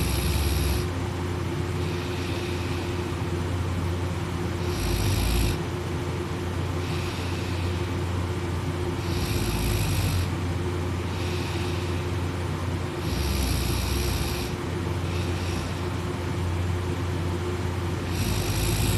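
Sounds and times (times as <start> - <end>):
person snoring: 0.0 - 0.9, 1.8 - 3.2, 4.6 - 5.6, 6.8 - 8.0, 9.0 - 10.3, 13.0 - 16.0, 18.0 - 18.9
steady low hum: 0.0 - 18.9.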